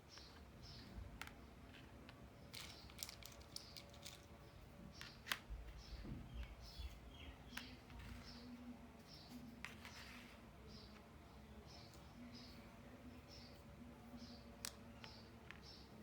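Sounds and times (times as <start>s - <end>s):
plastic toy pieces clicking: 2.5s - 4.3s.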